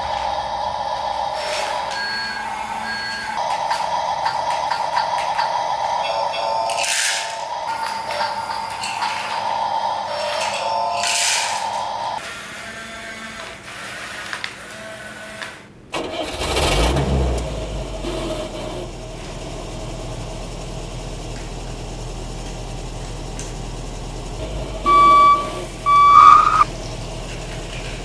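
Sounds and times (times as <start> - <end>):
engine idling: 16.0 - 28.0
loud high-pitched beeps: 24.8 - 26.7.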